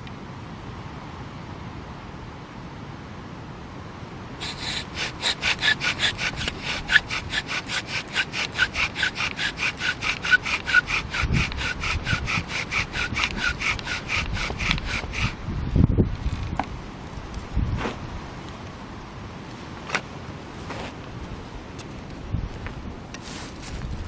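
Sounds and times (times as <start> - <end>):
bow drill spindle rubbing wood: 4.4 - 15.4.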